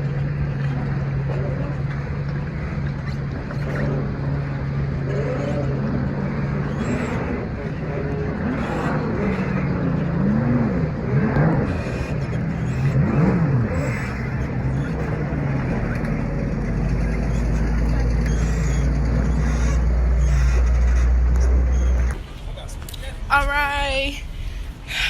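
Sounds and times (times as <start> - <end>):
jet ski engine: 0.0 - 23.3.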